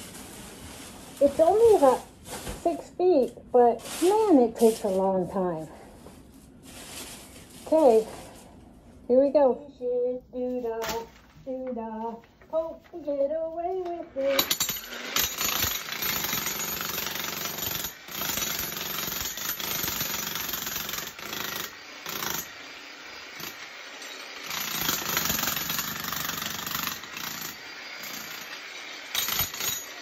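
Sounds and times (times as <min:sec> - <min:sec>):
demolition hammer on concrete: 0:13.8 - 0:30.0.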